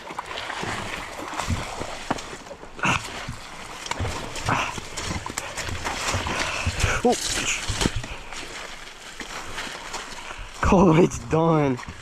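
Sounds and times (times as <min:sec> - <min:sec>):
dirt bike kickstarter strokes: 0:00.6 - 0:12.0
irregular thuds: 0:00.8 - 0:09.6.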